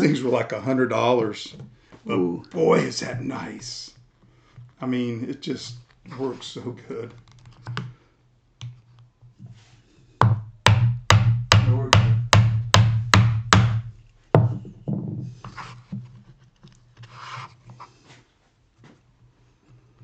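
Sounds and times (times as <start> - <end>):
mallet striking a chisel: 10.2 - 14.6.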